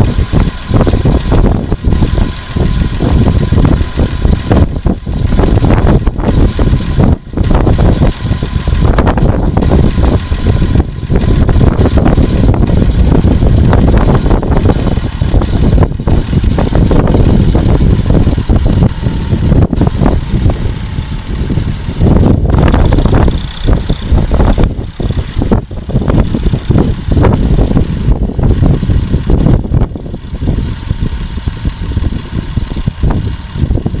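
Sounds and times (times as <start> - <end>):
high whine: 0.0 - 34.0
tractor engine and machinery: 0.0 - 34.0
wind buffeting microphone: 0.0 - 34.0.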